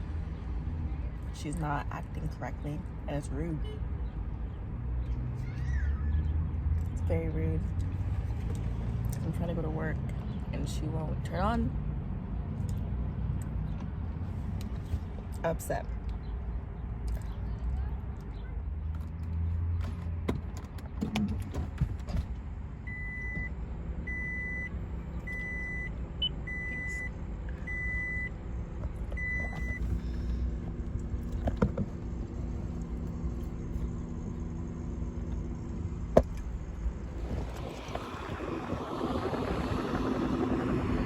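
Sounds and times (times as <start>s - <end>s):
dashboard warning chime beeping: 22.9s - 23.5s, 24.1s - 28.3s, 29.1s - 29.9s
low hum: 24.0s - 41.0s.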